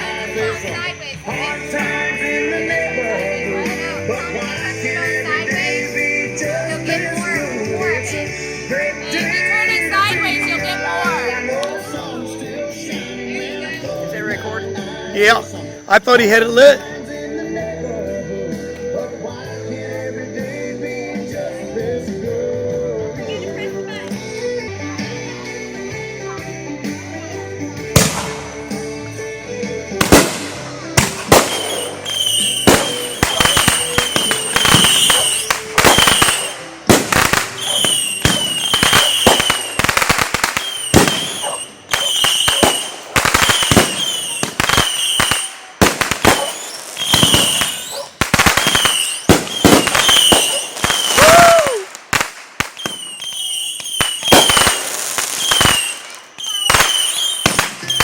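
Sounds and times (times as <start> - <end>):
fireworks bangs and crackles: 27.6 - 29.2, 29.9 - 58.0
firework falling whistle: 31.3 - 36.6, 37.4 - 45.7, 46.3 - 51.9, 52.6 - 54.8, 55.4 - 58.0.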